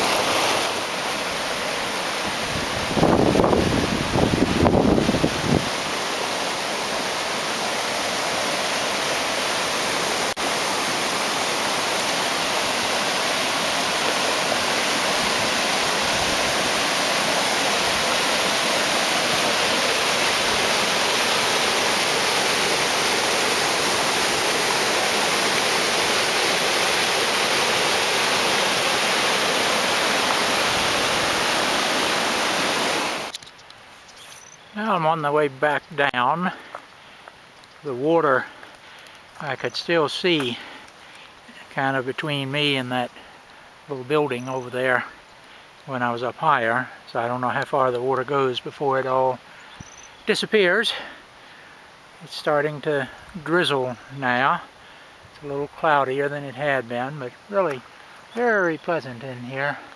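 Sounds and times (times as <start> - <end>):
waterfall rushing: 0.0 - 33.3.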